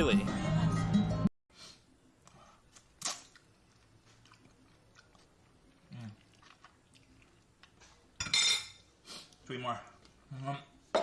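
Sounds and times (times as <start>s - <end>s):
faint chewing and mouth clicks: 2.2s - 8.2s.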